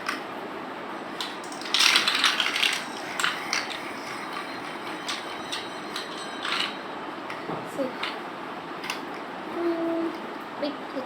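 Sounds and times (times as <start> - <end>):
plastic toy blocks clicking: 1.1 - 6.8.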